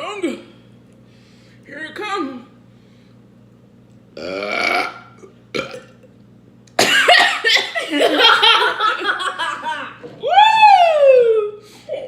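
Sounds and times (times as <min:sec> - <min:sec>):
person burping: 0:04.2 - 0:06.1.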